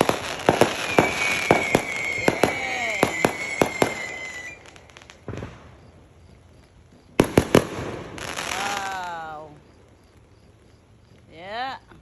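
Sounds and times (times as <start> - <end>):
high firework whistle: 0.0 - 5.6
fireworks banging: 0.0 - 12.0.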